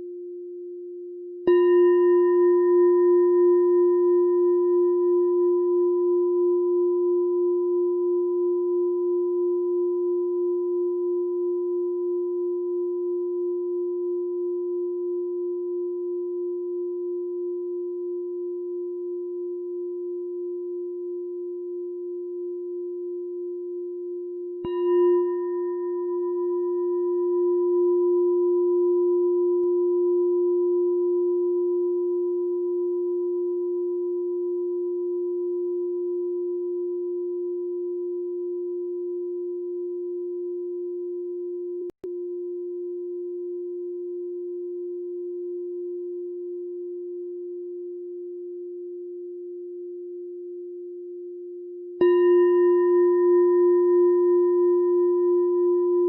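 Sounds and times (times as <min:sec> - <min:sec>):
meditation bell ringing: 0:01.4 - 0:12.9, 0:22.5 - 0:41.4, 0:52.0 - 0:56.0.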